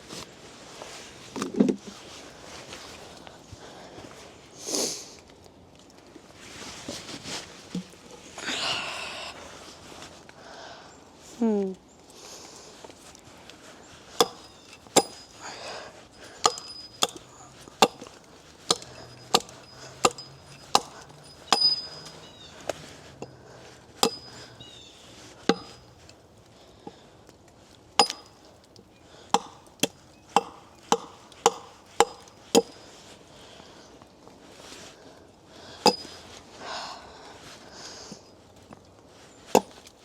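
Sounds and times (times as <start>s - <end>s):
axe chopping wood: 14.2s - 15.3s, 16.3s - 22.0s, 24.0s - 24.5s, 25.4s - 25.8s, 28.0s - 28.4s, 29.3s - 32.8s, 35.9s - 36.1s, 39.5s - 39.8s.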